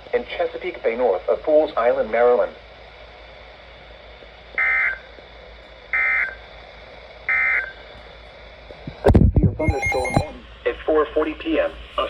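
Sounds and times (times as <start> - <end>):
faint radio hiss: 0.0 - 4.5, 8.7 - 12.0
warbling digital data tone: 9.6 - 10.4.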